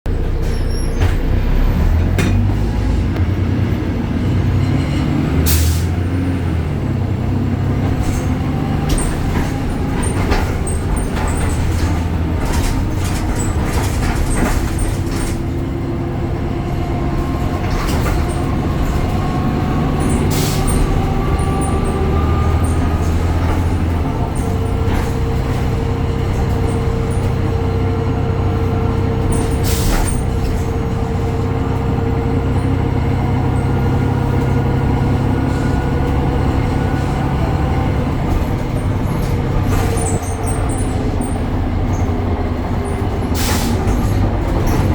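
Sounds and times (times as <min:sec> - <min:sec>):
bus engine drone: 0:00.0 - 0:44.9
rattles and clicks: 0:07.7 - 0:15.8, 0:17.1 - 0:27.7, 0:38.0 - 0:44.9.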